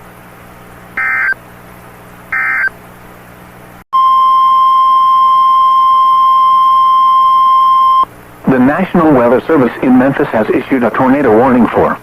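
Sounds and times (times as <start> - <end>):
digital data tone warbles: 1.0 - 1.4
steady alarm tone: 1.0 - 1.4, 2.3 - 2.7.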